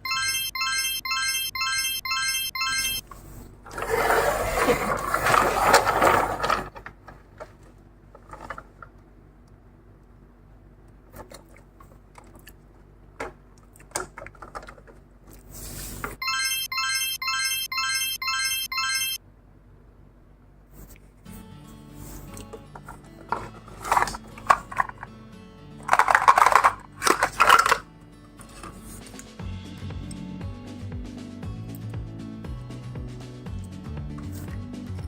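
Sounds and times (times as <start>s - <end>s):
electronic chime jingle: 0.0s - 3.0s, 16.2s - 19.2s.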